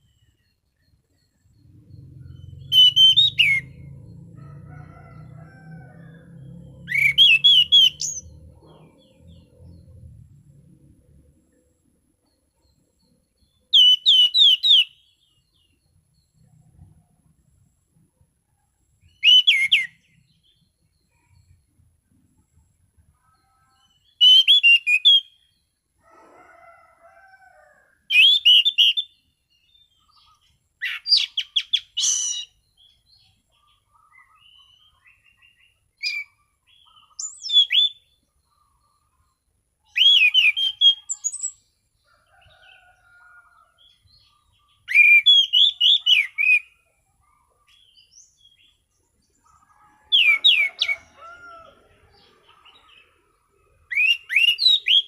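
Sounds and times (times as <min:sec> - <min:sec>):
thrush whistled song phrases: 0:02.7 - 0:03.8, 0:40.0 - 0:41.2, 0:44.9 - 0:46.8, 0:53.9 - 0:55.0.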